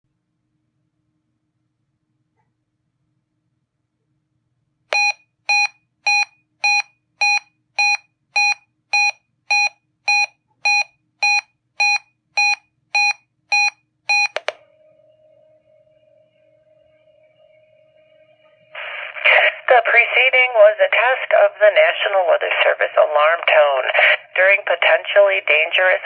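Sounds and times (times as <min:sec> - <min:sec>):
faint steady radio tone: 0:14.3 - 0:26.0.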